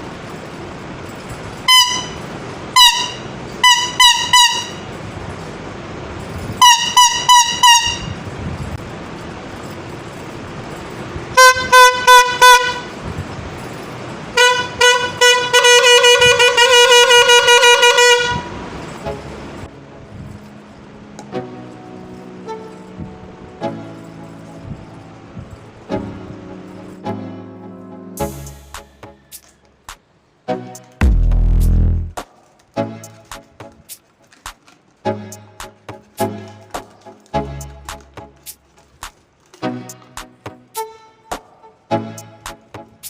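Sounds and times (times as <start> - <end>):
toy horn honking: 1.7 - 5.0, 6.6 - 8.2, 11.3 - 13.0, 14.4 - 18.6
high-pitched beeps: 31.0 - 32.2.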